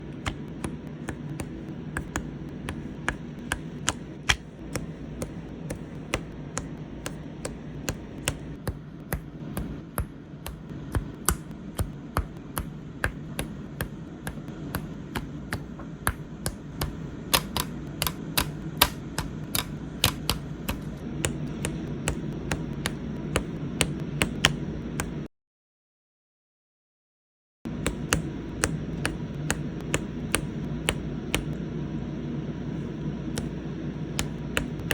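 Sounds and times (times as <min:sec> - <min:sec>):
low steady hum: 0:00.0 - 0:25.3, 0:27.7 - 0:34.9
plastic nail tips clicking: 0:13.8 - 0:20.9.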